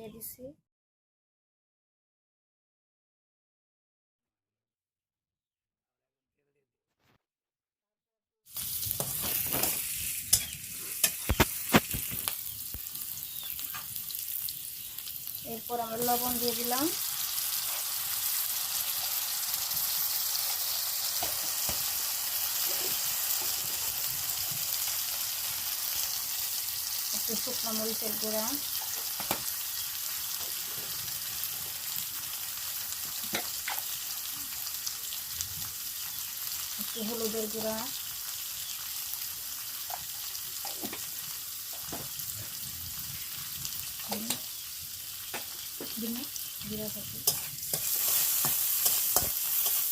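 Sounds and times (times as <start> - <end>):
oil sizzling in a pan: 8.5 - 49.9.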